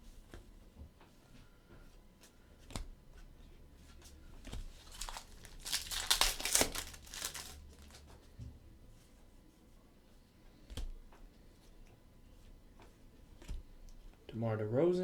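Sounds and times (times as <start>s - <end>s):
foil wrapper crinkling and tearing: 4.5s - 8.2s.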